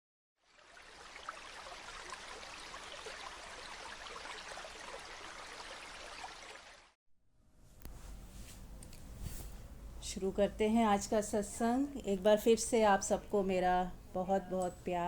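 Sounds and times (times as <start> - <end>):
water trickling and splashing: 0.4 - 7.0.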